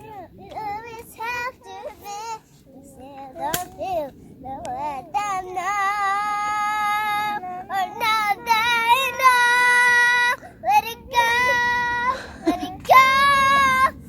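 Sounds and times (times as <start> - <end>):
child singing without words: 0.0 - 14.0.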